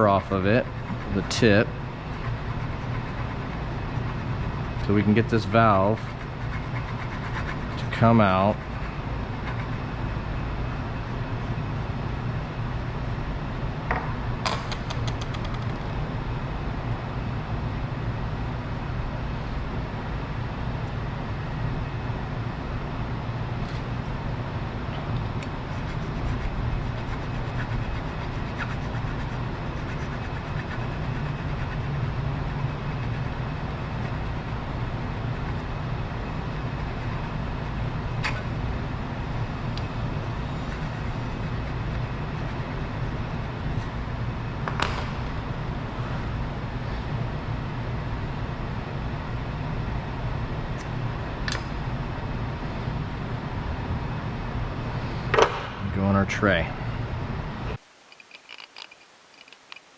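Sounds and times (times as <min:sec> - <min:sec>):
low workshop rumble: 0:00.0 - 0:59.9
sharp clicks: 0:57.9 - 0:59.9.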